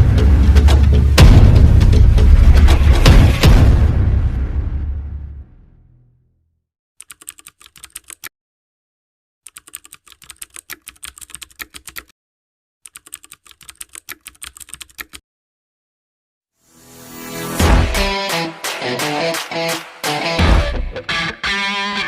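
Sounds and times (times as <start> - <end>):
computer keyboard typing: 7.0 - 8.3, 9.4 - 12.1, 12.8 - 15.2.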